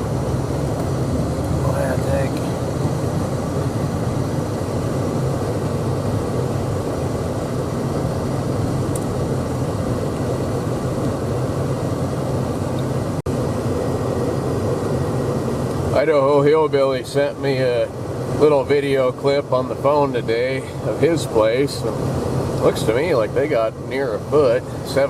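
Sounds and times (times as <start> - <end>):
constant low hum: 0.0 - 25.0
truck engine and road noise: 0.0 - 25.0.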